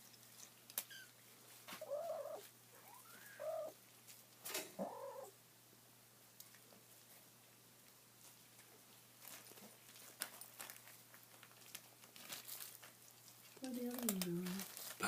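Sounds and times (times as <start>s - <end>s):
kitten mewing: 0.8s - 3.8s, 4.7s - 5.4s.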